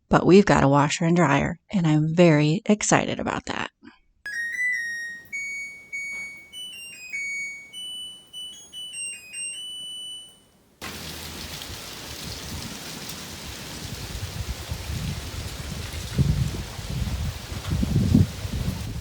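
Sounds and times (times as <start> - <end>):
keyboard background music: 4.3 - 10.0.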